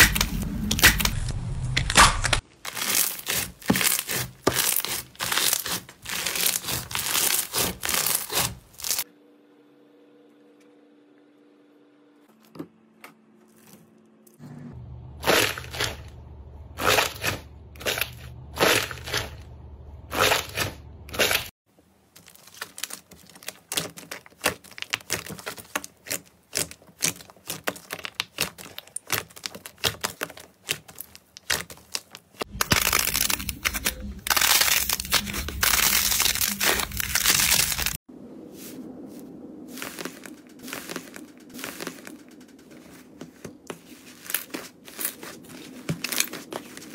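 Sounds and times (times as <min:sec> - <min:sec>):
slime crackling and popping: 0:00.0 - 0:09.0, 0:22.2 - 0:38.0
slime crunching: 0:01.8 - 0:09.0, 0:15.1 - 0:19.5, 0:22.2 - 0:38.0, 0:39.7 - 0:42.2.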